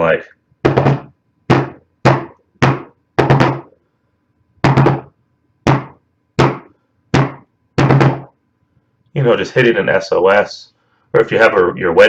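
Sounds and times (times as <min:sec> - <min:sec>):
knocking on a desk: 0:00.6 - 0:03.7.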